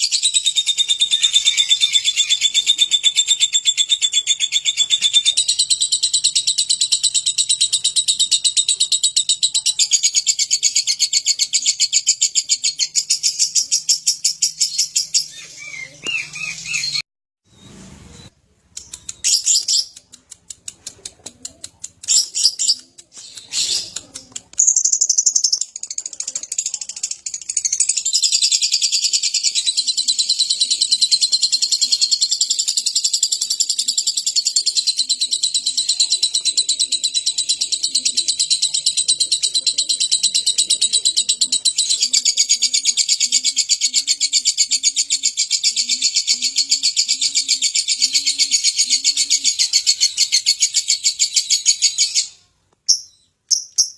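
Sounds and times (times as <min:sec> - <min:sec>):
bird high chirps: 0:00.0 - 0:20.0, 0:22.0 - 0:53.9
rapid high bird chattering: 0:18.8 - 0:52.2.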